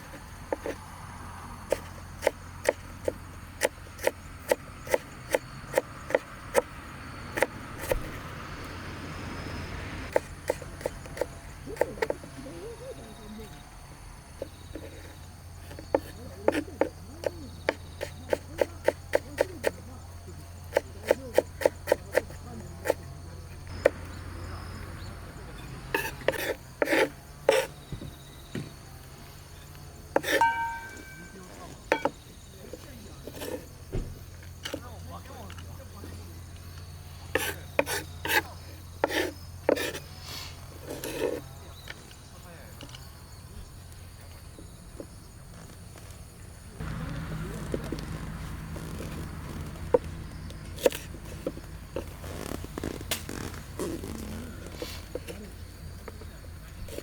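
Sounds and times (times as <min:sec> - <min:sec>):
sharp knocks on wood: 0:30.2 - 0:31.3
wooden chopping knocks: 0:30.2 - 0:32.2, 0:33.9 - 0:34.8.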